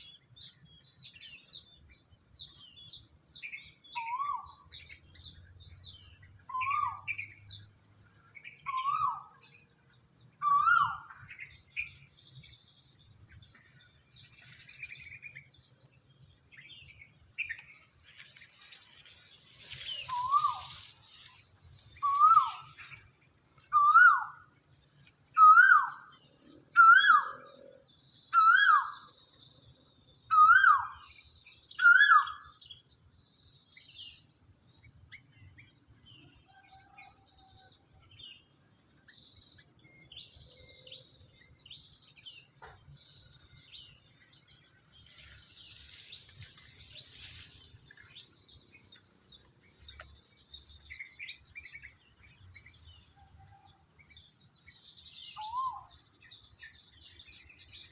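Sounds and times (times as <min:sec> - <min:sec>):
bird whistled call: 0:06.5 - 0:07.1, 0:08.7 - 0:09.4, 0:10.4 - 0:11.1, 0:19.9 - 0:20.8, 0:22.0 - 0:23.1, 0:23.7 - 0:24.4, 0:25.4 - 0:26.1, 0:26.7 - 0:27.5, 0:28.3 - 0:29.1, 0:30.3 - 0:31.1, 0:31.8 - 0:32.6, 0:55.3 - 0:56.2
faint bird chirps: 0:16.4 - 0:32.8, 0:39.0 - 0:57.9
high-pitched insect whine: 0:17.6 - 0:24.5.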